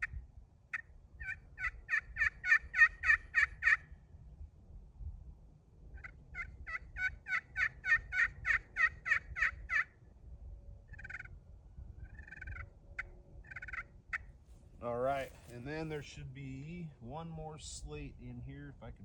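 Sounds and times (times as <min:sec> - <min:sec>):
turkey call yelps: 0:00.0 - 0:03.9, 0:06.0 - 0:10.0, 0:10.9 - 0:11.4, 0:12.0 - 0:14.3.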